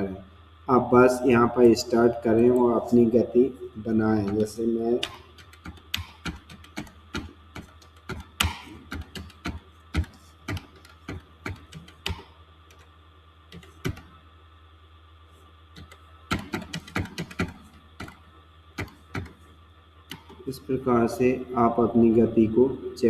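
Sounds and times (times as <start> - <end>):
computer keyboard typing: 4.1 - 12.9, 13.5 - 14.1, 15.8 - 18.2, 18.8 - 19.4.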